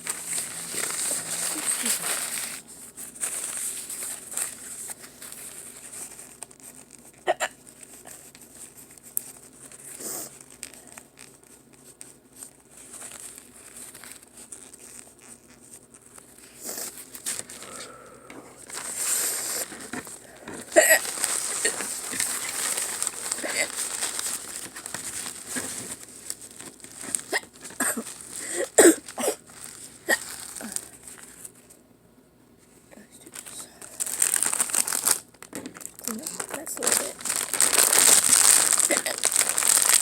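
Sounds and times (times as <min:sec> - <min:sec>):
chip bag crinkling: 0:00.0 - 0:18.0, 0:18.6 - 0:31.6, 0:33.1 - 0:40.0
person hiccuping: 0:07.2 - 0:07.6, 0:20.6 - 0:21.8, 0:27.3 - 0:29.4.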